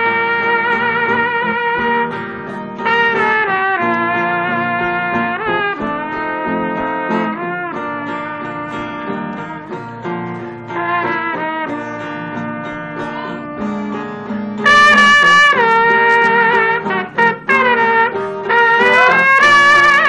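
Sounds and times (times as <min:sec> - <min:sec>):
man imitating a trumpet: 0:00.0 - 0:02.2, 0:02.8 - 0:09.8, 0:10.6 - 0:20.0
acoustic guitar playing: 0:00.0 - 0:20.0.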